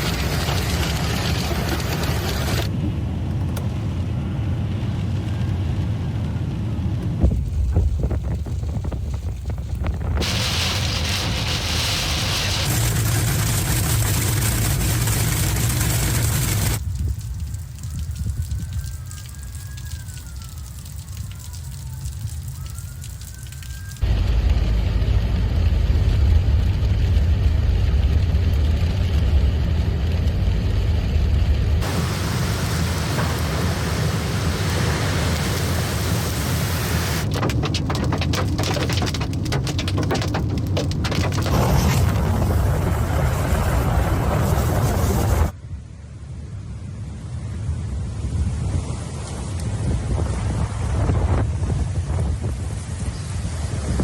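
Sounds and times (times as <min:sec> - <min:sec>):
storm wind buffeting microphone: 0:00.0 - 0:24.1, 0:37.0 - 0:45.6, 0:48.0 - 0:54.0
light rain: 0:00.0 - 0:31.1, 0:31.8 - 0:45.6
warning sirens wailing: 0:17.8 - 0:26.1
thumps: 0:37.2 - 0:43.0.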